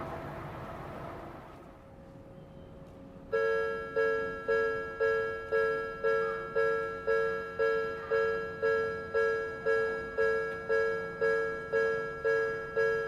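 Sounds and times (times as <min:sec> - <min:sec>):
level crossing alarm dinging: 0:03.4 - 0:13.0.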